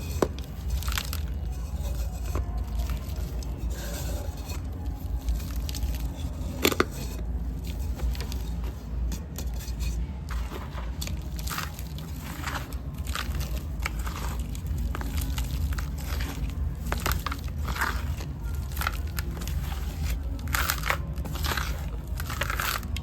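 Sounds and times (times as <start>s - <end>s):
sand-cement pieces crumbling: 0.0s - 9.6s, 10.2s - 23.0s
steady low hum: 0.0s - 23.0s.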